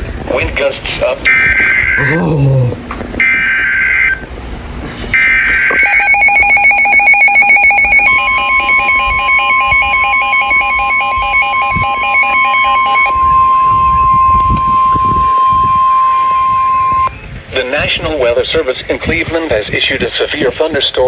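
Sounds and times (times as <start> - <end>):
steady single-pitch warning tone: 1.2 - 2.3, 3.2 - 4.3, 5.1 - 19.6
pulsing two-pitch alarm beeping: 5.1 - 17.2.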